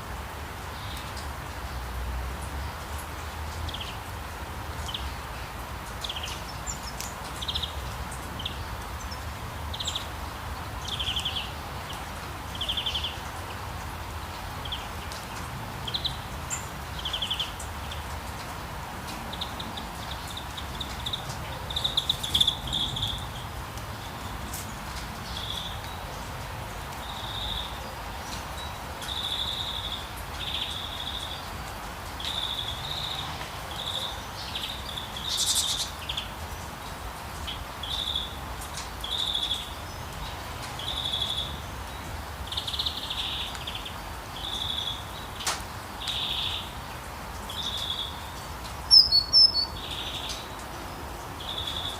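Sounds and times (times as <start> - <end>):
steady rain hiss: 0.0 - 51.9
bird chirping: 19.3 - 24.4, 32.2 - 36.3, 47.5 - 50.6.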